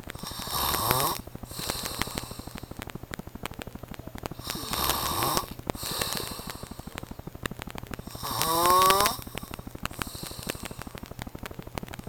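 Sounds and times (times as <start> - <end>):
man snoring: 0.1 - 2.6, 4.4 - 7.1, 8.1 - 10.8.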